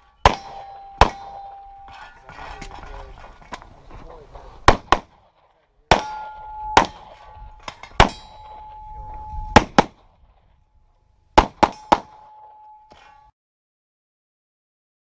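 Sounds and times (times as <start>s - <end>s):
steel targets ringing: 0.0s - 2.4s, 5.9s - 9.8s, 11.5s - 13.3s
pistol shots: 0.2s - 2.0s, 4.6s - 8.6s, 9.5s - 10.2s, 11.4s - 12.3s.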